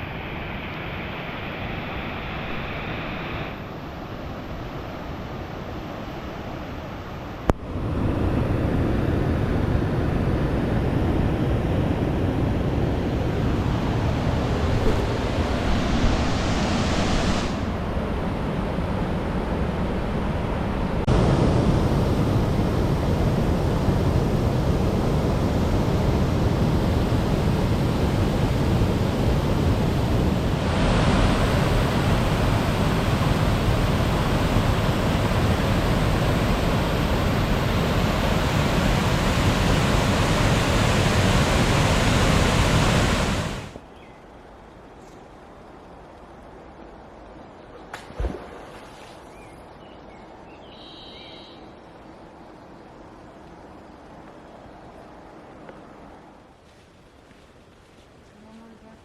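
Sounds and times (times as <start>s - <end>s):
creek water rushing: 0.0s - 50.4s, 51.1s - 59.0s.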